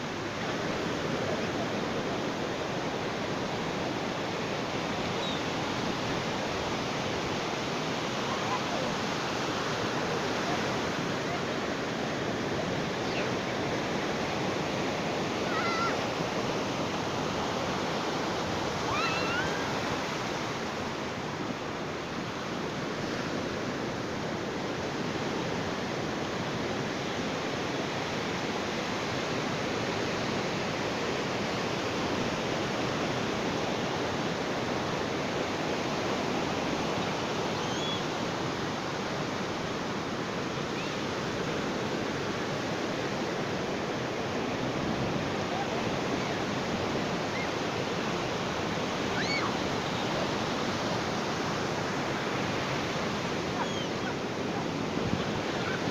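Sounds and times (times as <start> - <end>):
ocean surf on beach: 0.0 - 55.9
short rising bird calls: 18.9 - 19.7, 37.5 - 38.1, 47.3 - 47.6, 49.1 - 50.0, 53.5 - 54.2.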